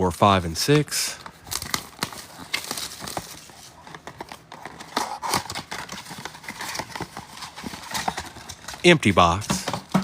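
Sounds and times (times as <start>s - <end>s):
foil wrappers crinkling and tearing: 0.2s - 9.4s
clicks and taps of card packs: 1.1s - 10.0s.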